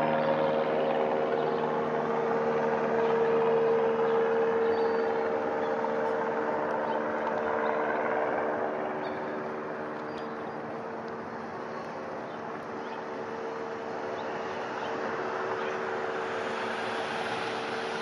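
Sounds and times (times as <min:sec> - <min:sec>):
light aircraft engine droning: 0:00.0 - 0:18.0.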